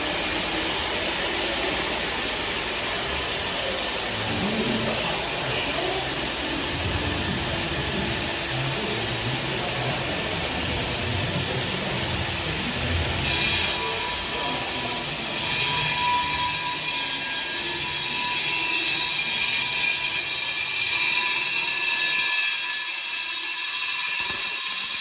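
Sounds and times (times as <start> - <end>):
power equipment hissing and whirring: 0.0 - 21.8.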